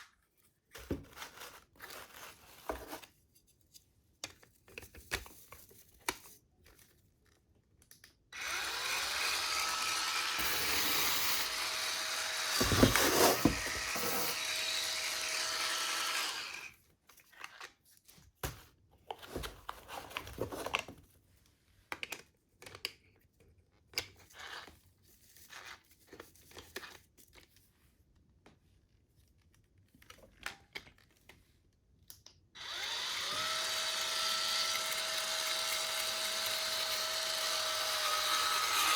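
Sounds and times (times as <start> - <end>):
electric scrubber motor whine: 8.4 - 16.7, 32.6 - 38.9.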